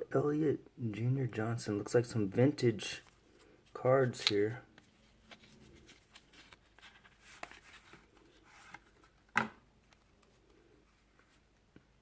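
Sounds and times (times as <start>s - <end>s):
hands rustling items: 3.0s - 11.9s.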